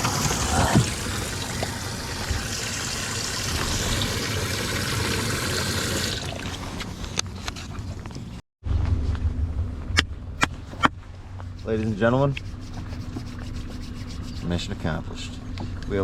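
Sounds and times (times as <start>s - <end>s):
water running and splashing: 0.0s - 7.2s.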